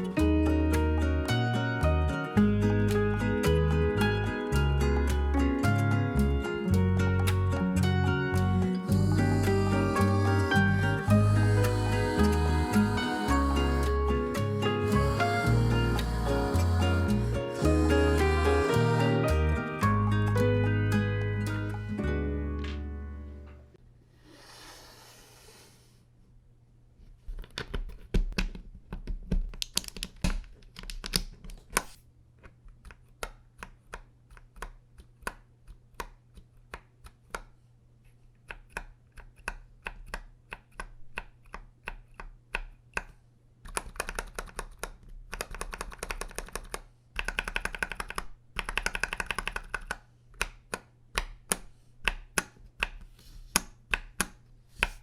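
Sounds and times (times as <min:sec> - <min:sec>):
typing on mechanical keyboard: 0:43.7 - 0:50.0.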